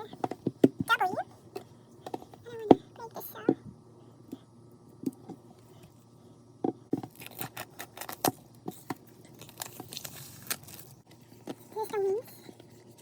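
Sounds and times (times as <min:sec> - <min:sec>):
plastic wrapping crinkling: 0:07.0 - 0:08.5, 0:09.2 - 0:11.0.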